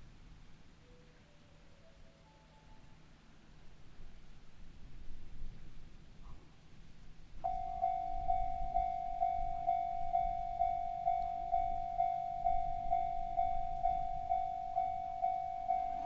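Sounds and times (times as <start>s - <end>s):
level-crossing warning bell ringing: 7.4s - 16.0s.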